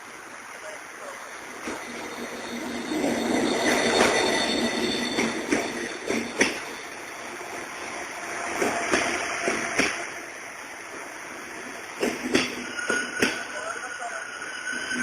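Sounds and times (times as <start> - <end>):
train rushing on rails: 0.0 - 15.0
train wheels knocking: 1.6 - 6.8, 8.6 - 10.1, 12.0 - 13.4.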